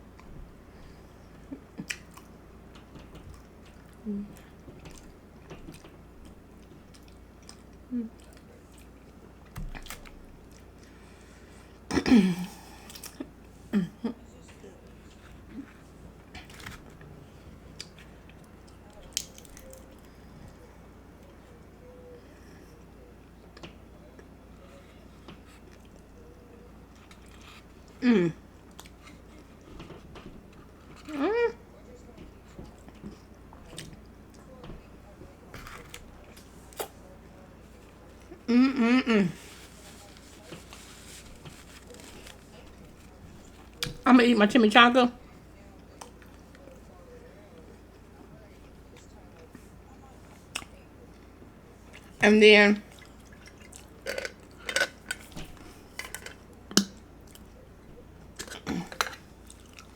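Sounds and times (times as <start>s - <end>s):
chewing and biting mouth sounds: 1.3s - 11.0s, 25.3s - 31.2s, 52.9s - 59.9s
chewing and biting tacos: 1.3s - 11.0s, 14.4s - 21.7s, 23.0s - 44.0s, 45.3s - 52.2s, 52.8s - 59.9s.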